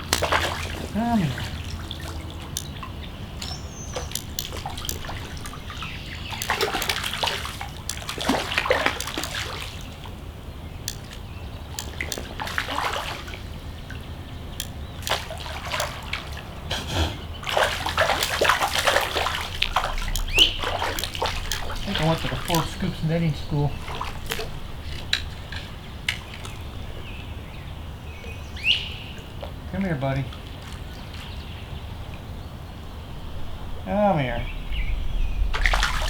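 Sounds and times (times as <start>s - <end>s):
water splashing from thrashing fish: 0.0s - 27.2s, 35.5s - 36.0s.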